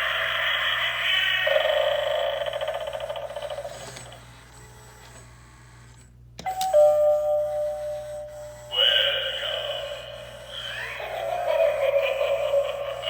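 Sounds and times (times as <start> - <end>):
electronic doorbell chime: 6.4 - 8.8.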